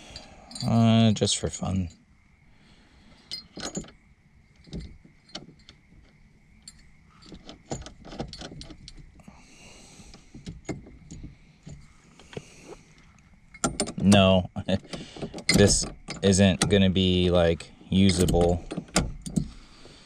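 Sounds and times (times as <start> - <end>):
metal parts clicking and clinking: 0.0 - 1.2, 3.3 - 4.0, 4.6 - 9.2, 13.0 - 19.6.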